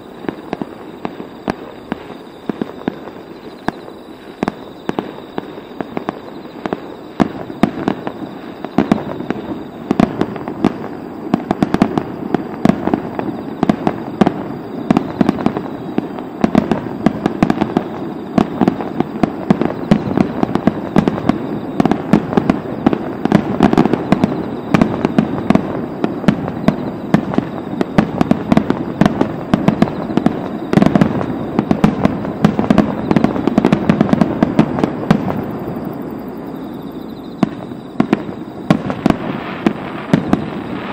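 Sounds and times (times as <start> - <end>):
fireworks bangs and crackles: 0.0 - 40.9.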